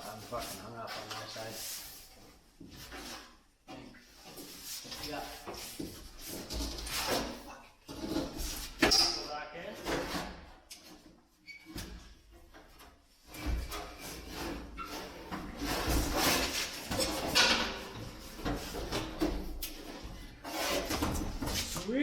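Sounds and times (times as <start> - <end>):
metal clunks and scraping: 2.1 - 21.8.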